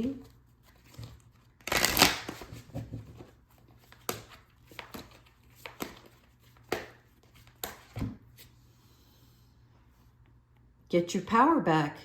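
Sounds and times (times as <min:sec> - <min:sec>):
cards tapping and clicking on table: 0:04.0 - 0:08.2.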